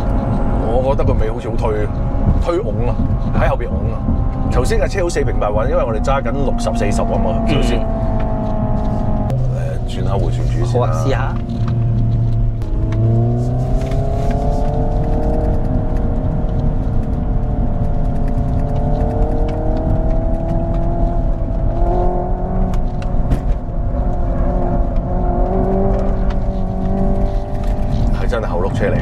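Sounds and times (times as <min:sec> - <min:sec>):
synthesized engine sound: 0:00.0 - 0:21.0
road rumble: 0:00.0 - 0:29.0.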